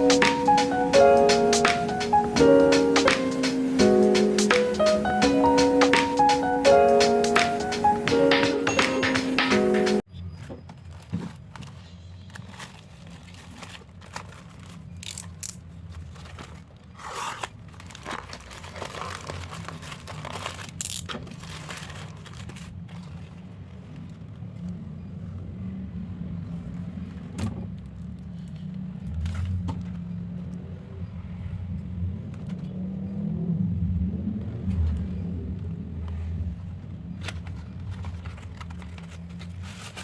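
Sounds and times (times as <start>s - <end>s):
packaging crinkling and tearing: 10.8s - 24.2s, 37.2s - 40.0s.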